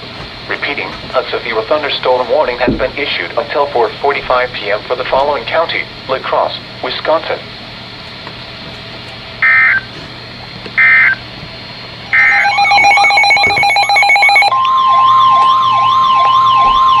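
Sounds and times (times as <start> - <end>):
electronic siren warbling: 9.4 - 9.9, 10.8 - 11.2, 12.1 - 17.0
steady high alert tone: 9.4 - 9.9, 10.8 - 11.2, 12.1 - 17.0
warbling digital data tones: 12.1 - 17.0.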